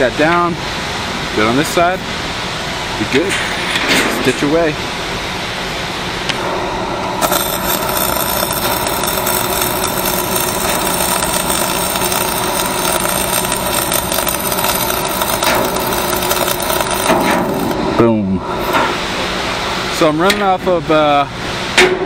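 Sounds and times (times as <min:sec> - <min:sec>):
welding arc crackling: 0:07.2 - 0:17.8, 0:18.5 - 0:19.0
welding generator engine running: 0:07.2 - 0:17.9, 0:18.5 - 0:20.9.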